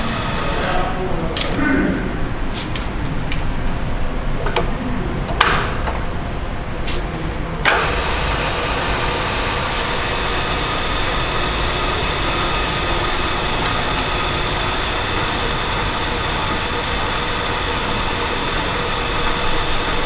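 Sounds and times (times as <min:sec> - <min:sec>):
milling machine motor humming: 0:00.0 - 0:20.0.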